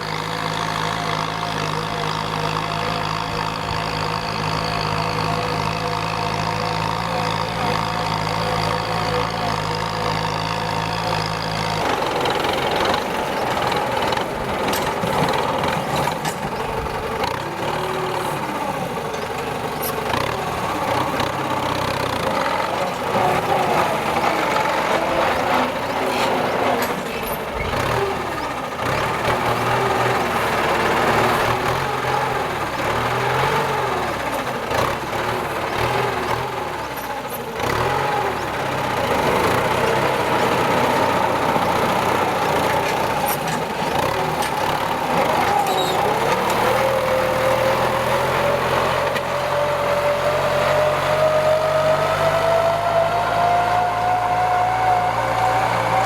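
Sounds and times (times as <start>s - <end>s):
tractor diesel engine under load: 0.0s - 56.0s.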